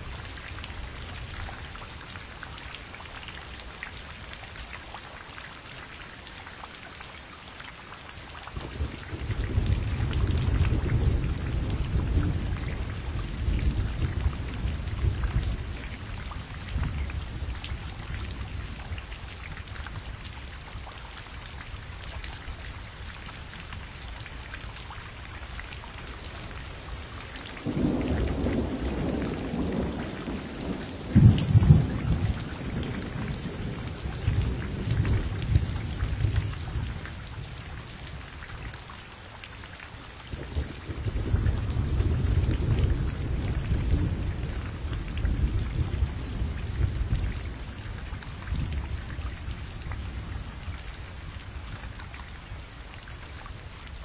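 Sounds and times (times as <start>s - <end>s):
steady rain: 0.0s - 54.0s
thunder rumbling: 27.6s - 36.9s, 40.4s - 49.1s.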